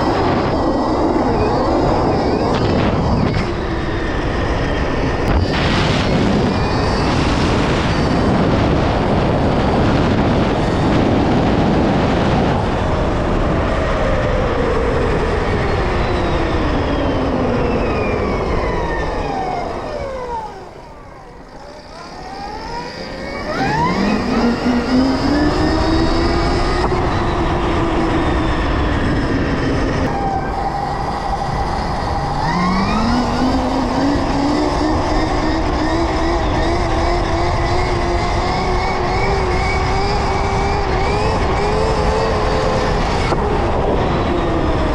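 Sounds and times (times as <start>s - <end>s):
constant rushing noise: 0.0s - 44.9s
electric motor whine: 15.0s - 44.9s.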